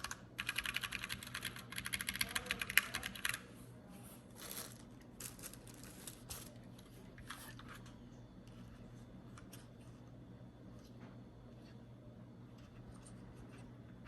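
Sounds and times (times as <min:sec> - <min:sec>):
typing on mechanical keyboard: 0:00.0 - 0:03.4.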